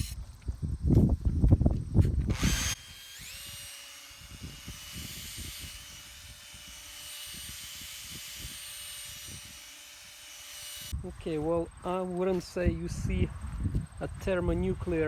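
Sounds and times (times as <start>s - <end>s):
small electric motor running: 2.2s - 11.0s.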